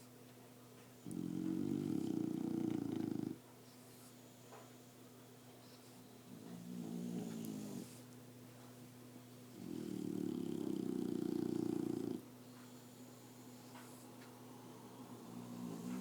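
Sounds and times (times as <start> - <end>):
dogs snoring: 1.0 - 4.9, 5.6 - 8.2, 9.4 - 16.0.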